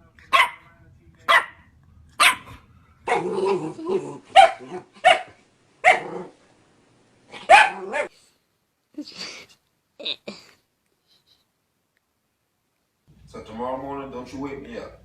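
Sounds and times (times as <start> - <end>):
dog barking: 0.3 - 0.7, 1.3 - 3.6, 4.3 - 6.3, 7.3 - 8.1
dog growling: 2.4 - 5.0, 6.0 - 6.4.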